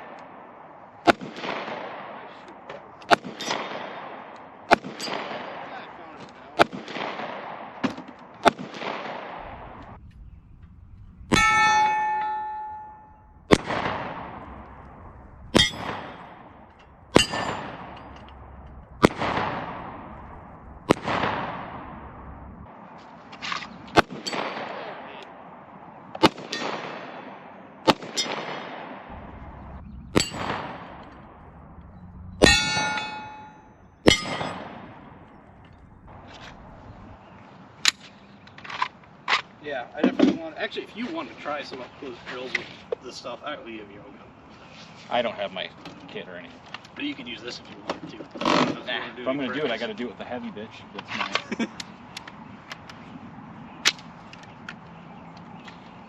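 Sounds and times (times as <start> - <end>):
rifle shots with echo: 0.0 - 10.0, 11.3 - 22.7, 23.9 - 31.6, 32.4 - 37.2
steel target ringing: 11.3 - 22.4, 29.1 - 31.6, 32.3 - 35.3.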